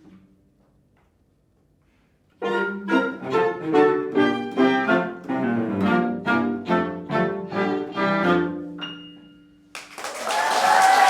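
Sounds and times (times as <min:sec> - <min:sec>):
classical chamber ensemble playing: 0:02.4 - 0:08.9
audience applause: 0:09.8 - 0:11.0.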